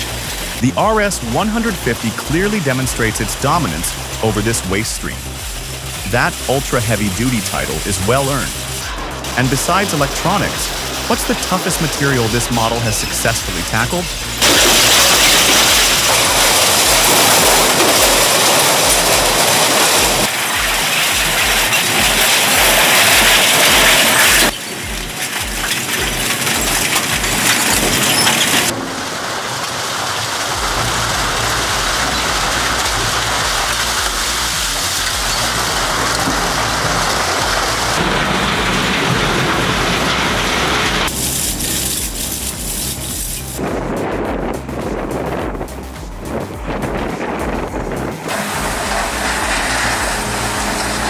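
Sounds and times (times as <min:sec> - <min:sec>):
shredding machinery grinding: 0:12.2 - 0:43.5, 0:48.2 - 0:51.0.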